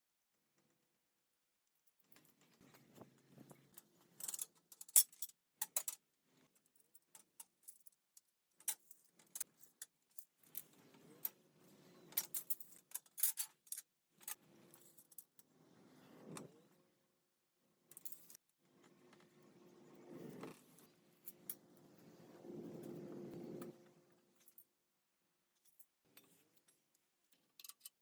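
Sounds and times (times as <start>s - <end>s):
light metallic clicks and clinks: 25.6s - 28.0s.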